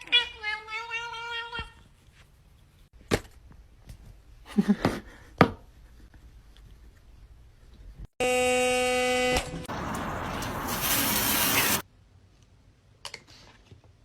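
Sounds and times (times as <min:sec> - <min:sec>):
electronic buzzer tone: 0:08.2 - 0:09.4.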